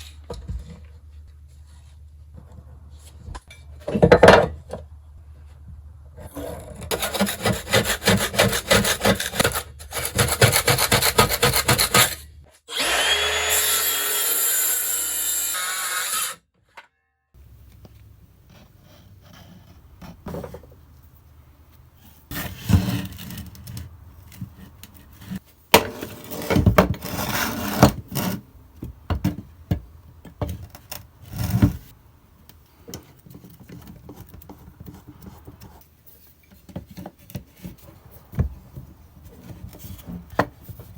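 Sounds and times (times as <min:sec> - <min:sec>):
hand saw cutting wood: 0:06.8 - 0:16.4.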